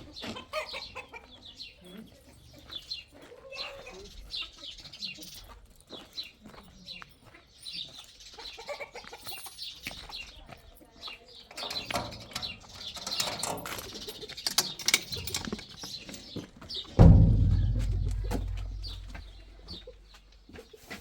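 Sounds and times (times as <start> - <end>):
birds chirping: 0.0 - 20.8
clicks and clatter: 11.5 - 16.4
loud deep boom: 17.0 - 19.3.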